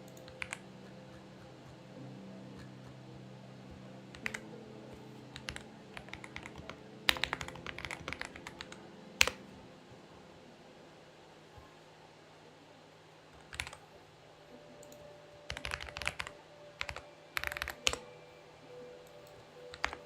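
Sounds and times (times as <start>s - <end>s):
mechanical keyboard typing: 0.0s - 1.8s, 4.1s - 4.4s, 5.3s - 9.5s, 13.4s - 13.8s, 14.8s - 18.1s, 19.2s - 20.0s.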